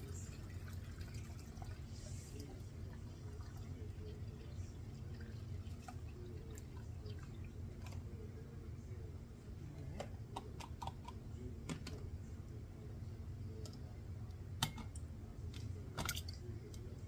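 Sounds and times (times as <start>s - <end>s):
low steady hum: 0.0s - 17.0s
dishes clicking and knocking: 10.0s - 12.0s.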